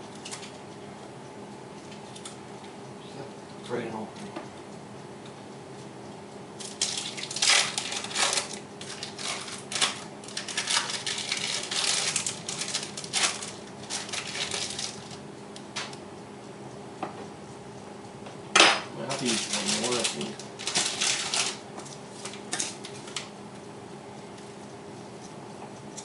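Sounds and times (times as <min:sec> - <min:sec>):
faint steady hum: 0:00.0 - 0:26.0
plastic wrapper crinkling: 0:06.6 - 0:15.2, 0:19.1 - 0:21.6.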